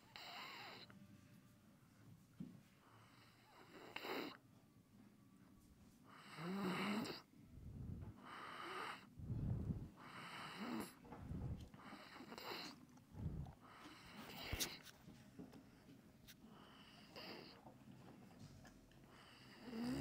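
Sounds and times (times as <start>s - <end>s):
foal snoring: 6.2s - 14.7s, 19.3s - 20.0s.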